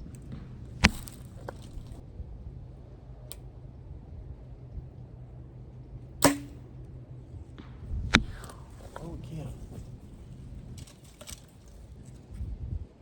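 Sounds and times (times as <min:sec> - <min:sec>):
bowstring hum: 0:00.0 - 0:12.4
wind rumble on microphone: 0:00.0 - 0:13.0
bow release crack: 0:00.1 - 0:02.0, 0:06.2 - 0:06.6, 0:08.1 - 0:09.1.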